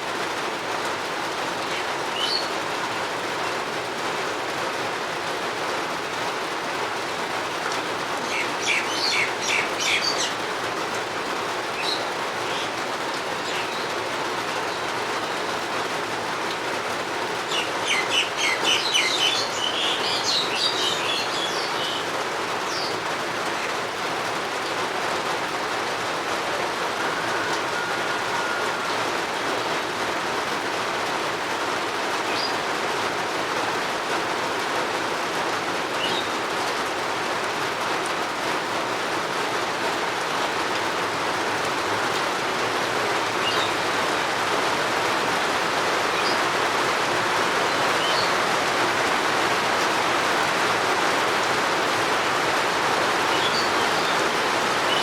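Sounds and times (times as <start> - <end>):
steady rain falling: 0.0 - 55.0
bird chirping: 8.3 - 10.4, 17.5 - 22.0.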